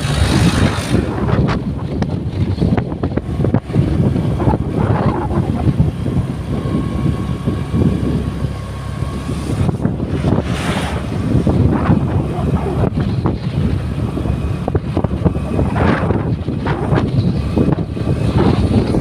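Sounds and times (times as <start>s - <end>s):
vehicle rumble: 0.0s - 19.0s
wind buffeting microphone: 0.0s - 19.0s.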